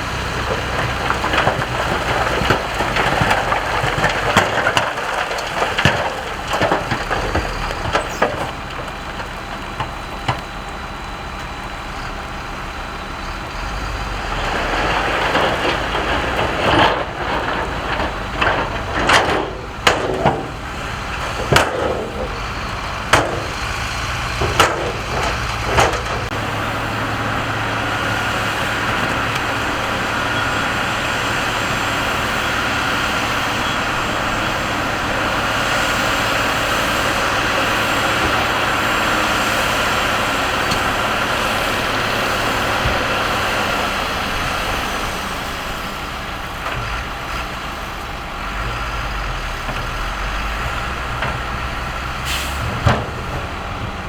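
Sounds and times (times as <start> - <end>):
diesel earthmoving machinery running: 0.0 - 54.0.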